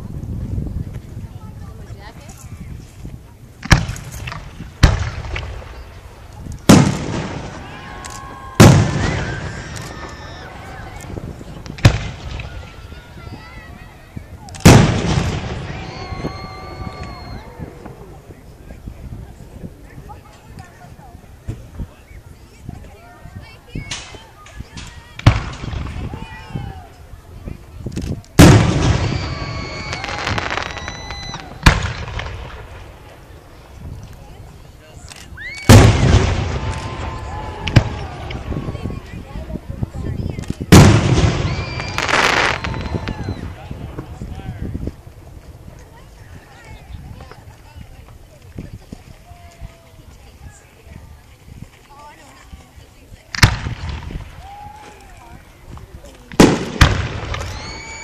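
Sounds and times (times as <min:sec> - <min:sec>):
firework crackling tail: 0:00.0 - 0:21.9, 0:23.8 - 0:48.2, 0:53.2 - 0:58.0
firework bang: 0:03.6 - 0:05.9, 0:06.6 - 0:12.9, 0:14.6 - 0:18.2, 0:24.8 - 0:26.2, 0:28.4 - 0:33.4, 0:35.6 - 0:39.0, 0:40.7 - 0:44.4, 0:53.3 - 0:54.4, 0:56.4 - 0:58.0
firework shells bursting: 0:56.3 - 0:58.0.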